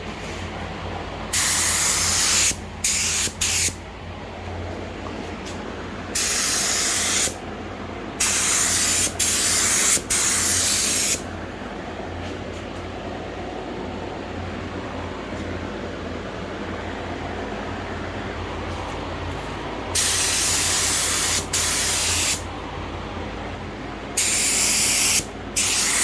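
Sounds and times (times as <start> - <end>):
steady low hum: 0.0 - 26.0
spray gun hissing: 1.3 - 3.8, 6.2 - 7.4, 8.2 - 11.2, 20.0 - 22.4, 24.2 - 26.0.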